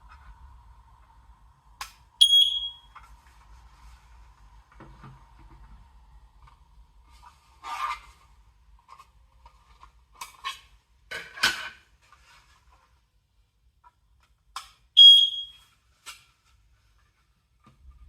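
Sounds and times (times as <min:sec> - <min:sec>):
smoke detector beep: 0:02.2 - 0:02.9, 0:15.0 - 0:15.6.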